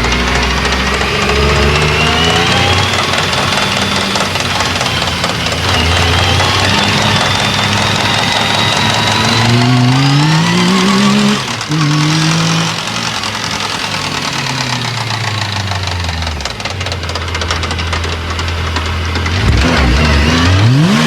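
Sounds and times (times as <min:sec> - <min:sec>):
vehicle engine revving: 0:00.0 - 0:21.0.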